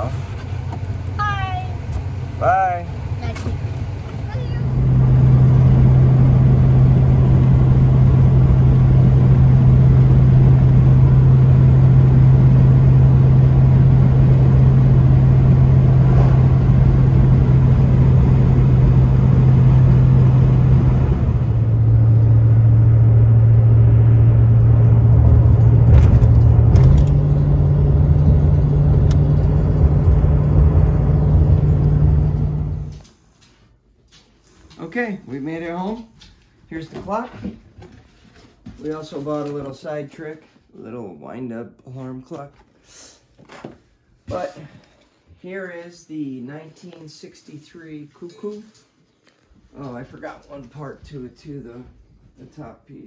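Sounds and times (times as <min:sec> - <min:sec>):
car cabin engine and road hum: 0:00.0 - 0:33.0.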